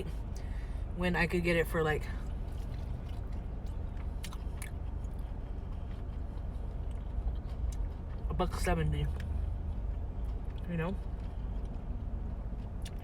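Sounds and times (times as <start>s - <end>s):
chewing and biting chicken wings: 2.5s - 8.3s, 12.6s - 13.0s.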